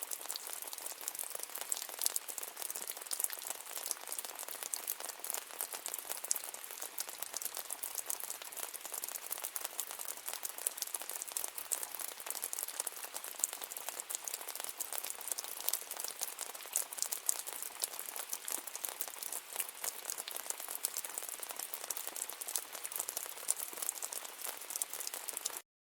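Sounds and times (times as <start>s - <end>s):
steady rain falling: 0.0s - 25.6s.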